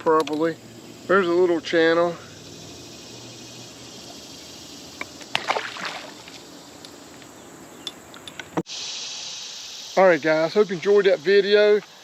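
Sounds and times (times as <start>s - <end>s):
outdoor background hiss: 0.0s - 12.0s
canoe knocks and splashes: 5.2s - 6.4s.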